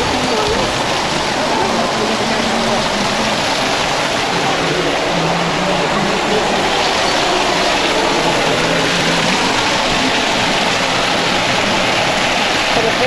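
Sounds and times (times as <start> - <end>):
running water rushing: 0.0 - 13.0.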